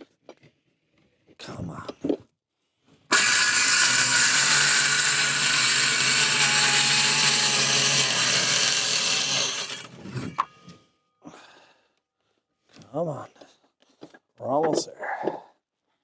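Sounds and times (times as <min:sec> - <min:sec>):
power saw labouring: 0:03.1 - 0:10.5.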